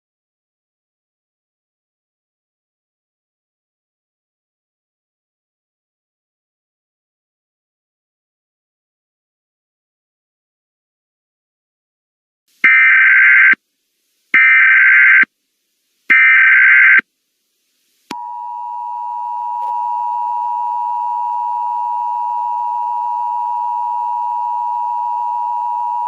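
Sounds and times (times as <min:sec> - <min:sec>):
buzzing data bursts: 0:12.6 - 0:13.6, 0:14.4 - 0:15.3, 0:16.1 - 0:17.0.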